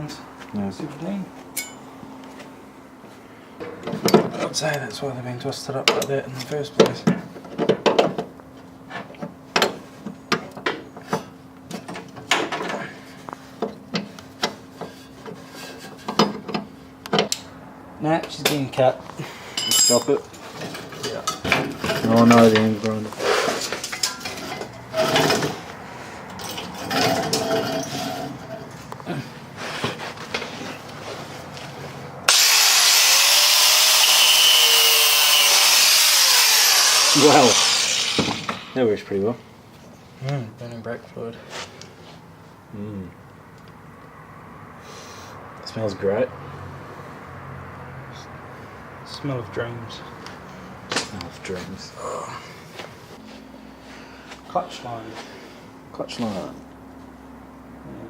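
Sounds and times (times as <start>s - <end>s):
metal tools clinking and scraping: 1.5s - 1.9s, 19.4s - 25.7s, 26.3s - 29.0s
angle grinder cutting metal: 32.3s - 39.0s.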